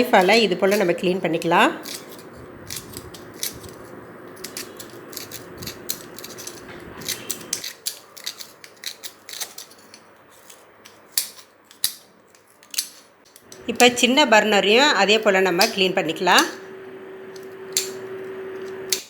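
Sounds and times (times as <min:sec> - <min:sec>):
knife scraping metal: 0:01.8 - 0:12.0.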